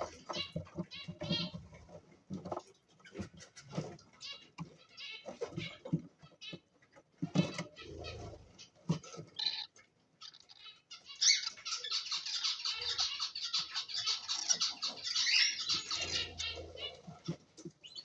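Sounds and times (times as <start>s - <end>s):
cockatiels chirping: 0.0s - 6.6s, 7.3s - 18.0s.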